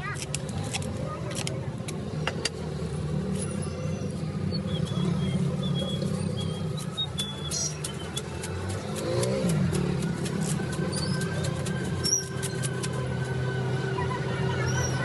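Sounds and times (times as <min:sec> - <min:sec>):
engine running steadily: 0:00.0 - 0:15.0
scattered clicks: 0:06.4 - 0:13.1.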